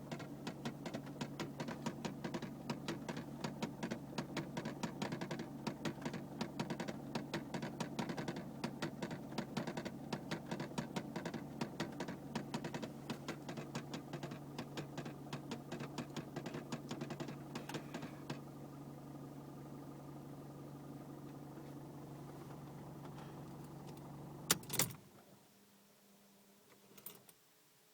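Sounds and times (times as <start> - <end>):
rapid regular ticking: 0.0 - 18.4
diesel engine idling: 0.0 - 24.5.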